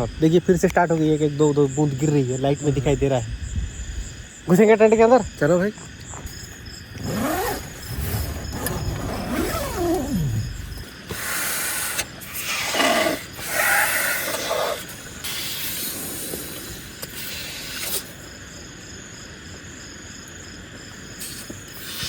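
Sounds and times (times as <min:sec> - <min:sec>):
steady hiss: 0:00.0 - 0:22.0
tent fabric rustling: 0:06.3 - 0:11.0.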